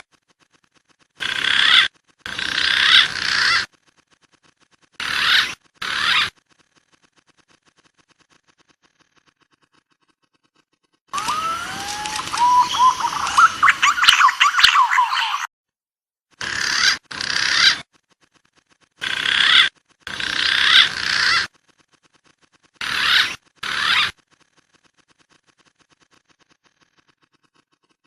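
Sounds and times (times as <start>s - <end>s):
pigeon calls: 0.0s - 3.8s, 4.4s - 6.4s, 11.1s - 15.5s, 16.4s - 18.0s, 19.0s - 21.6s, 22.7s - 24.3s.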